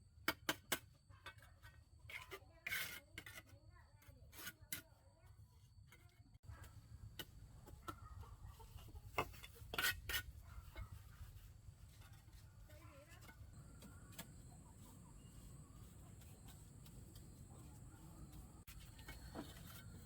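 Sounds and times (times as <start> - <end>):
chickens clucking: 7.6 - 9.7.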